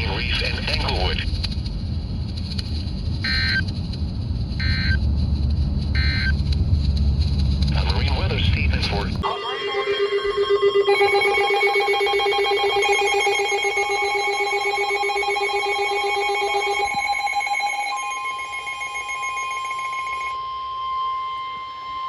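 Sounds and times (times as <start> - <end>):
pulsing electronic alarm: 3.2 - 3.7, 4.6 - 5.0, 5.9 - 6.4, 9.2 - 22.0
steady alarm tone: 3.2 - 3.7, 4.6 - 5.0, 5.9 - 6.4, 9.2 - 22.0.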